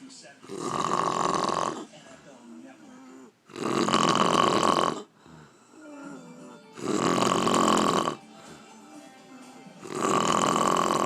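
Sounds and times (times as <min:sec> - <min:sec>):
woman snoring: 0:00.5 - 0:01.9, 0:03.0 - 0:08.3, 0:09.8 - 0:11.0.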